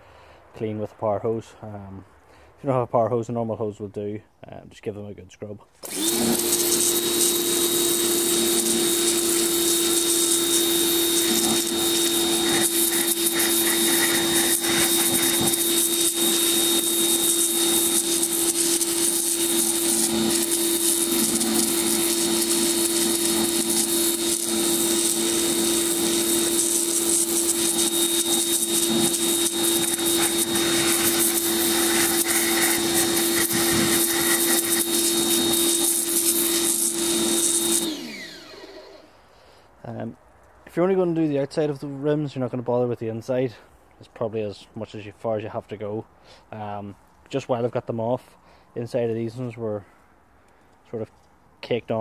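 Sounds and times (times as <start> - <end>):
pressure washer motor hum: 5.8 - 39.2
water jet hissing: 5.9 - 38.2.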